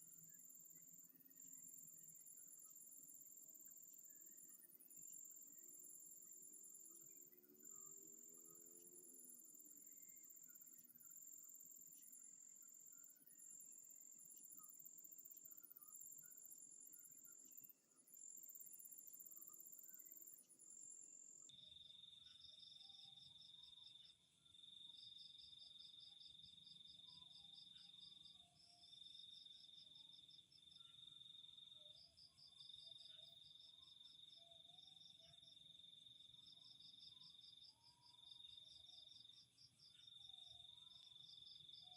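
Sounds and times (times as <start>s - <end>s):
rapid pulsed insect chirps: 0.0s - 24.1s.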